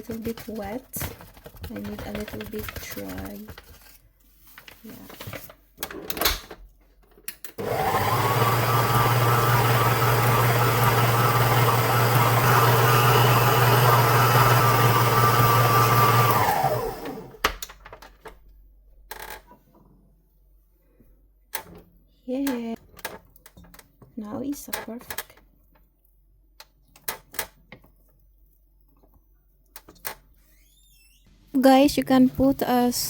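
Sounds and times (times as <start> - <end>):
food processor motor running: 7.6 - 17.4.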